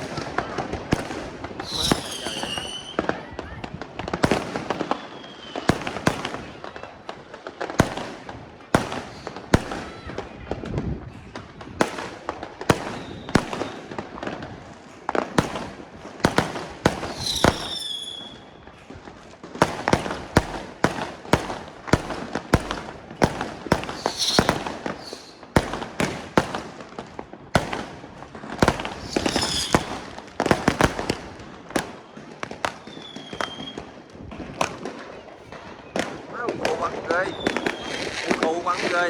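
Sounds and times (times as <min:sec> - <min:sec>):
fireworks bangs and cracks: 0:00.0 - 0:39.0
high whistling tone: 0:24.0 - 0:25.4, 0:29.0 - 0:29.8.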